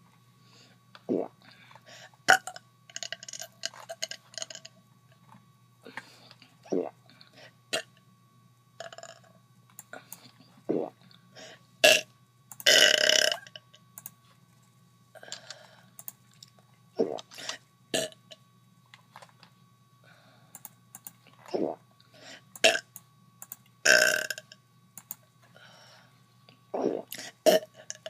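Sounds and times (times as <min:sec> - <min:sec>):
woman burping: 0:26.8 - 0:28.0.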